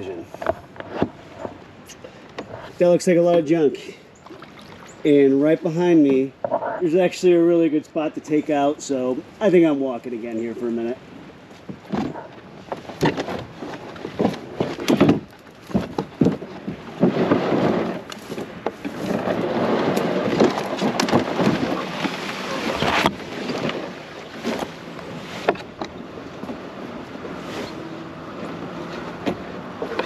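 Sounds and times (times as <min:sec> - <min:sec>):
scraping and rustling through brush: 0:09.4 - 0:30.0
canoe hull knocking and thumping: 0:11.6 - 0:27.4, 0:28.5 - 0:30.0.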